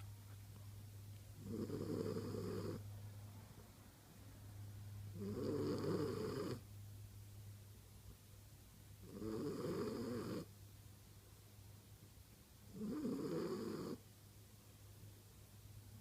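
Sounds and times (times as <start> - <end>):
dog snoring: 1.4 - 2.8, 5.1 - 6.7, 9.0 - 10.5, 12.7 - 14.0.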